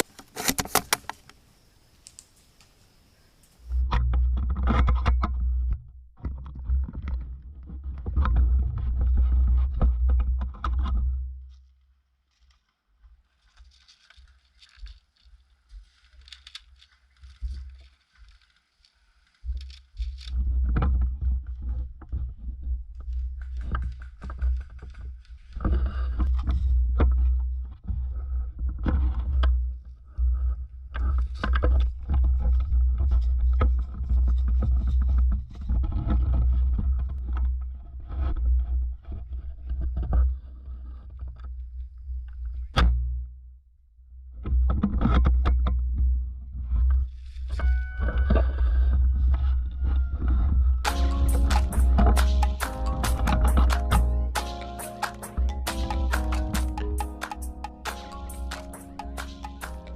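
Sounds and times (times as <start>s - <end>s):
sharp crack: 0.0s - 1.4s
knocks and clicks: 50.8s - 59.9s.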